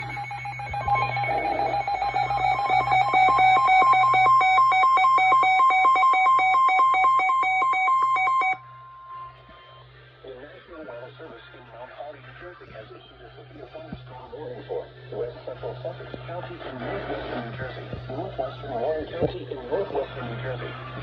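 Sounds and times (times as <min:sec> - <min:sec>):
pulsing electronic alert tone: 0:00.0 - 0:09.3
faint electronic tone: 0:00.0 - 0:10.2.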